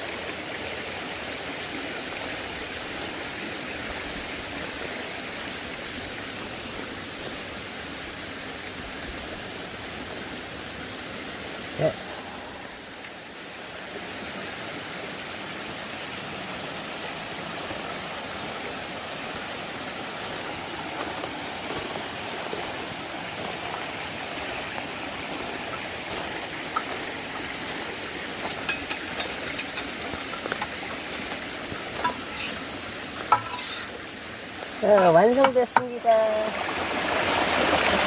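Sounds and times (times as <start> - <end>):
creek water running: 0.0 - 38.0.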